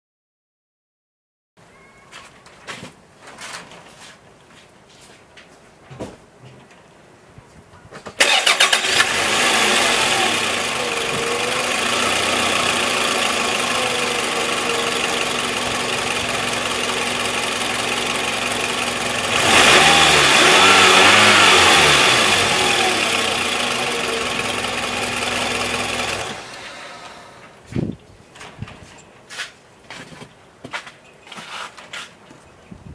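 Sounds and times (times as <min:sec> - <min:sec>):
minivan engine idling: 0:08.2 - 0:27.5.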